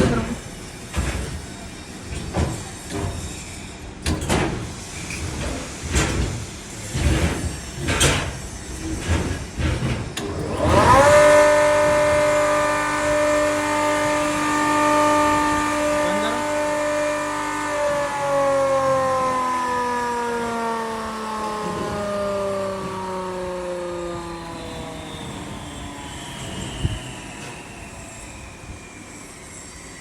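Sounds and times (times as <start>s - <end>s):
flour grinder humming: 10.4s - 28.0s.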